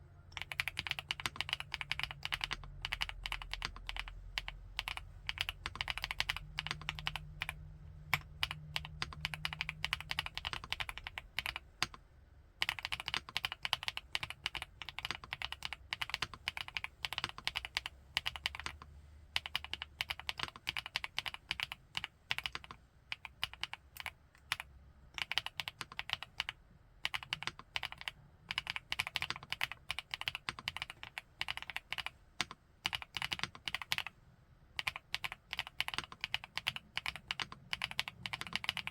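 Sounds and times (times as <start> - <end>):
mechanical keyboard typing: 0.3 - 12.0, 12.6 - 34.2, 34.8 - 38.9.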